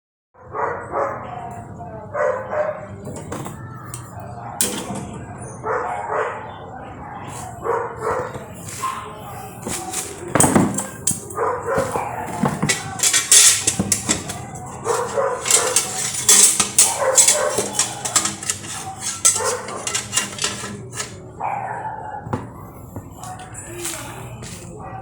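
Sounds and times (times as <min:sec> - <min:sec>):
dog barking and yipping: 0:14.8 - 0:20.2.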